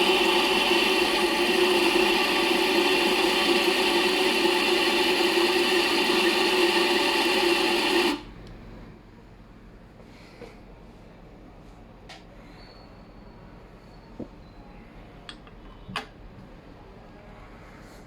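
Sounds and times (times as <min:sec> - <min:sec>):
small appliance motor running: 0:00.0 - 0:08.4.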